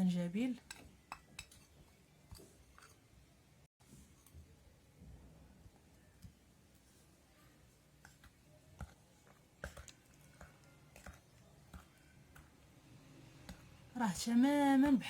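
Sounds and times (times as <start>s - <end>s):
metal spoon tapping a dish: 0.7s - 1.8s.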